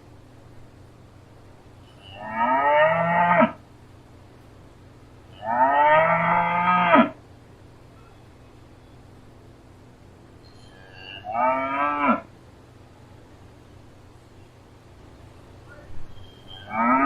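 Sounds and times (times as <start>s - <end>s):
cow mooing: 1.9s - 3.6s, 5.3s - 7.2s, 10.8s - 12.3s, 16.5s - 17.0s.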